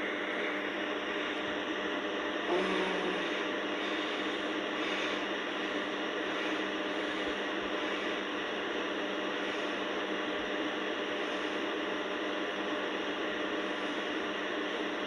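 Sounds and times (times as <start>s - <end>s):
steady whirring noise: 0.0s - 15.0s
brief low tone: 2.5s - 3.4s.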